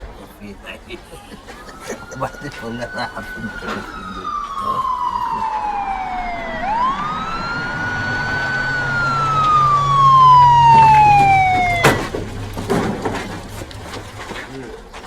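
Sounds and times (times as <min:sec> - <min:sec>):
police car siren wailing: 0:01.4 - 0:14.1.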